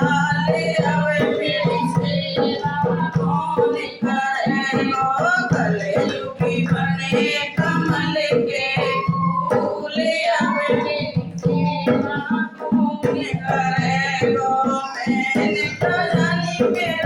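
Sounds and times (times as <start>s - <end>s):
devotional song with accompaniment: 0.0s - 17.0s.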